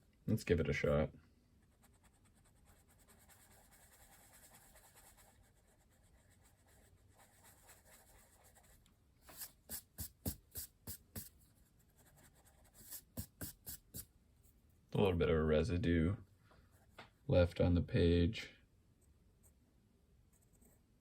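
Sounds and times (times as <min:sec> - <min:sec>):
pencil rubbing on paper: 0:01.8 - 0:14.1.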